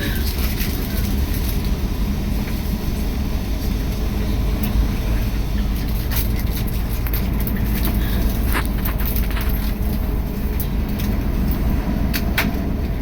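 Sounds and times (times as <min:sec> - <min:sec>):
bus engine and road rumble: 0:00.0 - 0:13.0
light clicks and rattles: 0:05.8 - 0:12.7.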